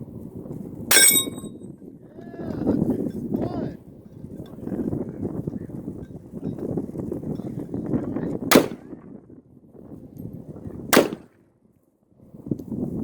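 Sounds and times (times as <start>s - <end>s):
rifle shots with echo: 8.5s - 8.9s, 11.0s - 11.3s.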